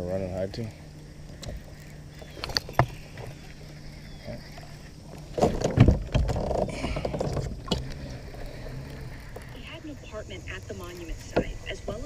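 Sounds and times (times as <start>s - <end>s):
faint low hum: 0.0s - 12.0s
rough knocking and splashing: 5.2s - 9.6s.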